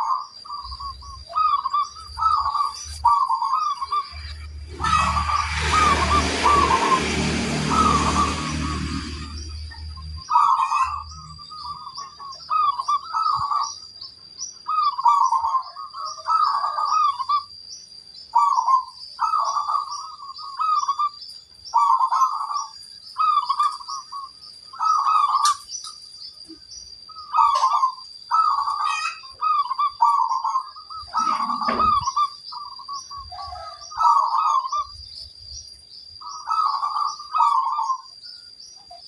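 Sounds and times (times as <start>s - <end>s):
dove cooing: 0.0s - 13.6s, 27.3s - 34.9s, 36.3s - 38.0s.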